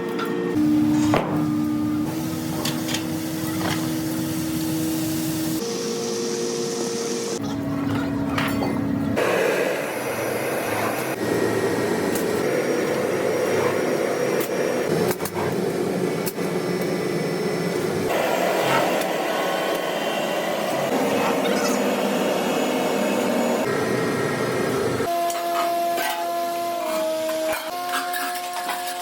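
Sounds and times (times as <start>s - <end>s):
power tool whirring: 9.7s - 27.8s.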